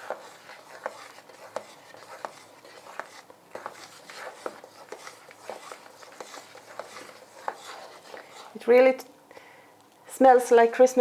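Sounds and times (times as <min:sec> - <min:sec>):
utensil tapping mixing bowl: 0:00.0 - 0:08.6.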